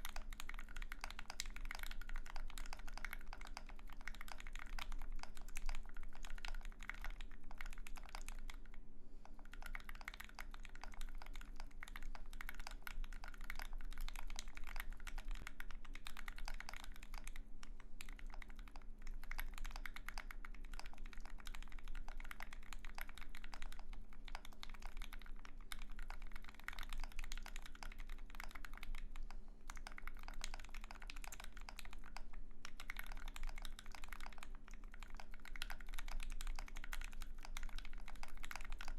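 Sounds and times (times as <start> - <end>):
fast typing on mechanical keyboard: 0.0 - 38.9.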